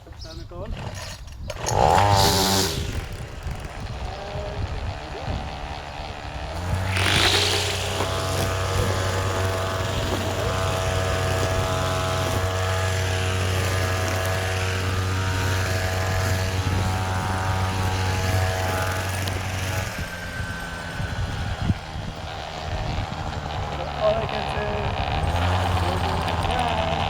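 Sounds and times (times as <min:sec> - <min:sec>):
line trimmer running: 0:00.6 - 0:27.0.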